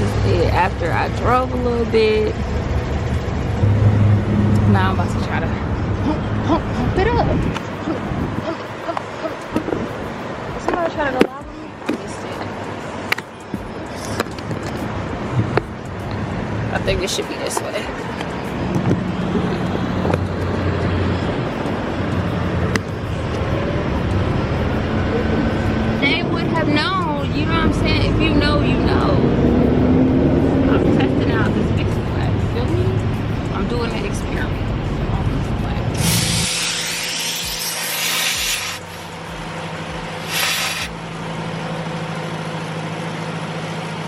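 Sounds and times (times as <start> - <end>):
air compressor hum and hiss: 36.0 - 39.2, 40.2 - 41.0.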